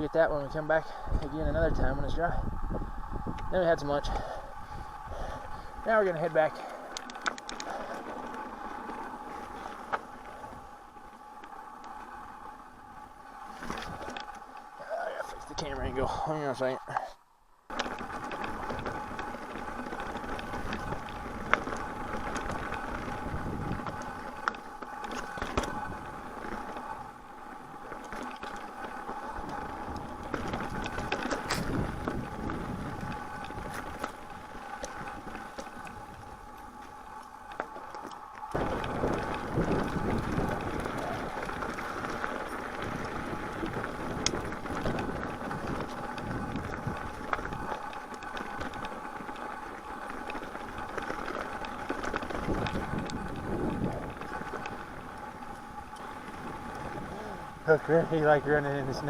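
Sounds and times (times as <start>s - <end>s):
bike tyres on rocky trail: 0.0s - 59.0s.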